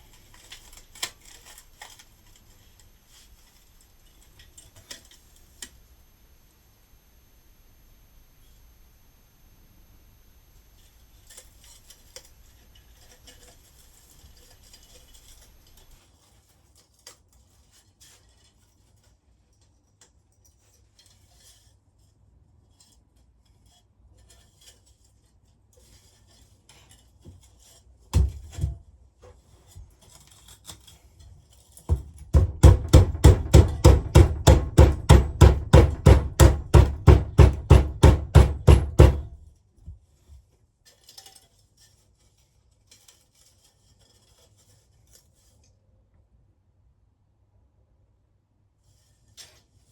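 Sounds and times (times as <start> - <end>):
sharp knocks: 31.9 - 39.4
loud even hammering: 32.2 - 39.4.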